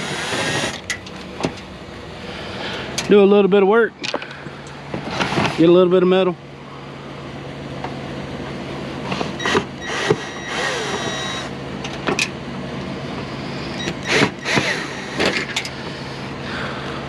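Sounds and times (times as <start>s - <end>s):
steady low hum: 0.0s - 17.0s
screws squeaking and clicking: 9.4s - 11.5s, 13.7s - 15.2s.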